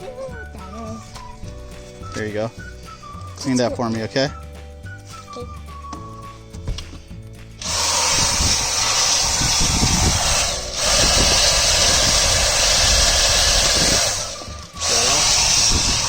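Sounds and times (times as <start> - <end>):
handheld vacuum running: 7.6 - 16.0.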